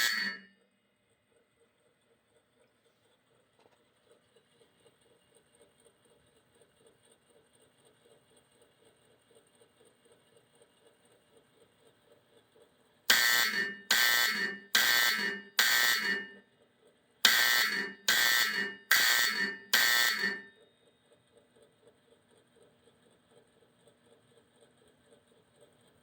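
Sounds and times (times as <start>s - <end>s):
fire alarm bell strokes: 0.0s - 0.7s, 13.1s - 16.5s, 17.2s - 20.6s.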